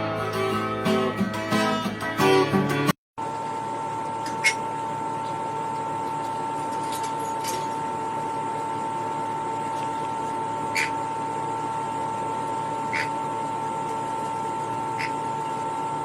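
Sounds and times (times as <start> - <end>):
parrot chirps: 10.7 - 11.0, 12.9 - 13.2.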